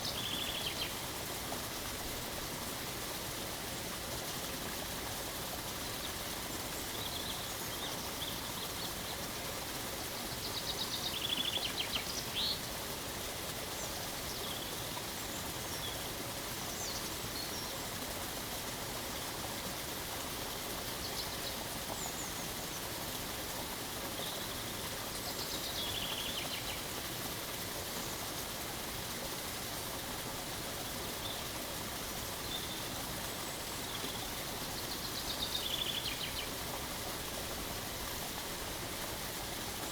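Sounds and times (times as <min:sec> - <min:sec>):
songbirds chirping: 0:32.4 - 0:36.7.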